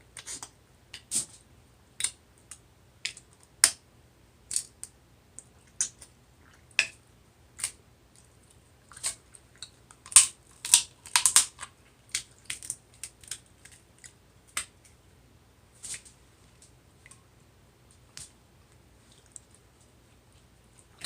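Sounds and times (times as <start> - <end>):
shellfish crunching and cracking: 8.9 - 14.7.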